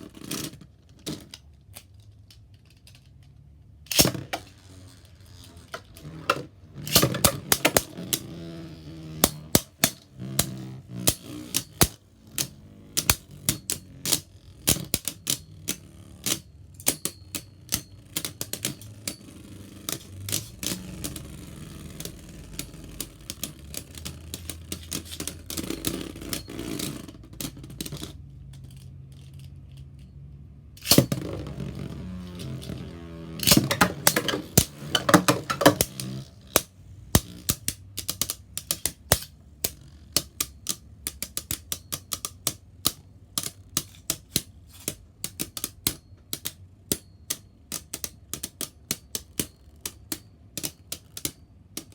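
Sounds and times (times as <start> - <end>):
spinning tops clashing: 3.9 - 27.6, 30.8 - 42.5.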